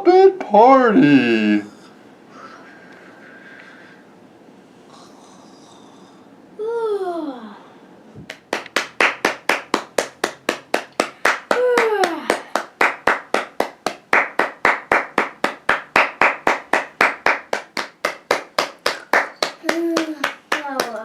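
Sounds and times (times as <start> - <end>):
hands clapping: 8.3 - 21.0.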